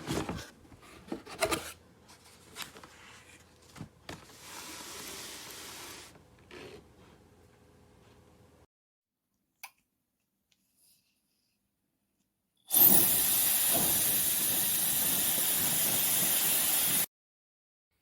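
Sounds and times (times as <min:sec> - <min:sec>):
hair dryer blowing: 0:12.7 - 0:17.1.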